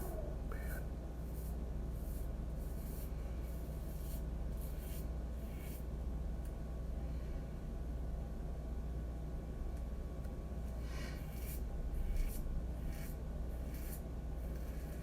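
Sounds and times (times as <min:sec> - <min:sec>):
steady low hum: 0:00.0 - 0:15.0
razor scraping stubble: 0:01.2 - 0:05.9, 0:11.2 - 0:15.0.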